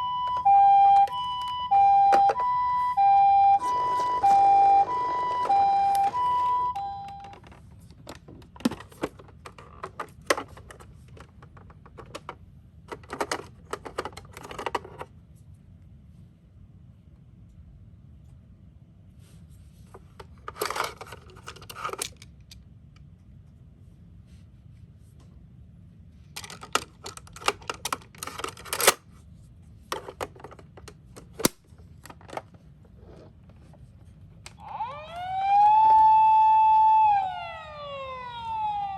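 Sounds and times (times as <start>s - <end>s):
toy electronic siren: 0.0s - 7.4s, 34.5s - 38.9s
toy cars clicking and clattering: 6.8s - 15.1s, 20.4s - 22.6s, 26.4s - 29.0s.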